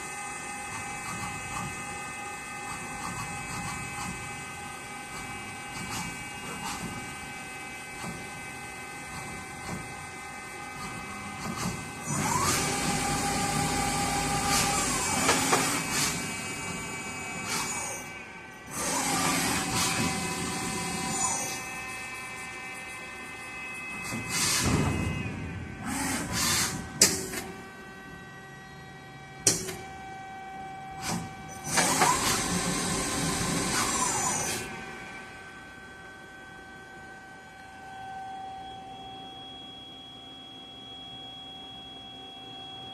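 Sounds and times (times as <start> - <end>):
motor whine: 0.0 - 42.9
steady machine hum: 0.0 - 42.9
motor whirring: 10.7 - 27.6, 31.0 - 34.8.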